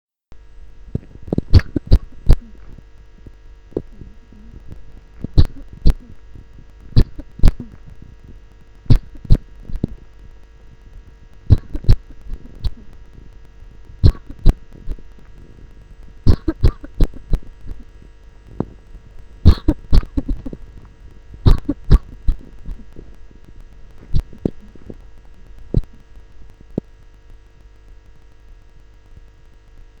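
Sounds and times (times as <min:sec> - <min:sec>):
steady electrical hum: 0:00.3 - 0:30.0
person coughing: 0:14.0 - 0:14.5, 0:16.3 - 0:17.4, 0:19.5 - 0:20.6, 0:21.5 - 0:22.8.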